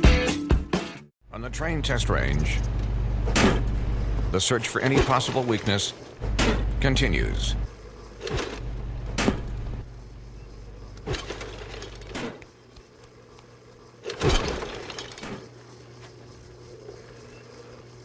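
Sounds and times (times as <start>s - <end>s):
low steady hum: 1.2s - 18.0s
sharp impacts and crashes: 14.1s - 15.5s.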